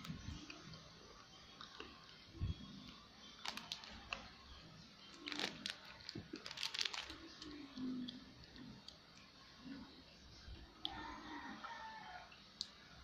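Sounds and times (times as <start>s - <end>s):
crisp crackles: 3.4s - 4.4s, 5.0s - 7.8s.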